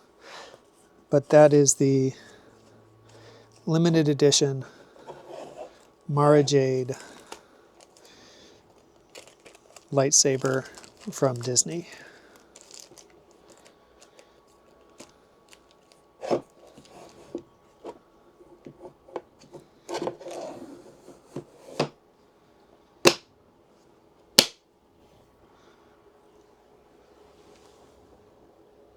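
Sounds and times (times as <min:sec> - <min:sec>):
rustling: 0:04.6 - 0:18.0.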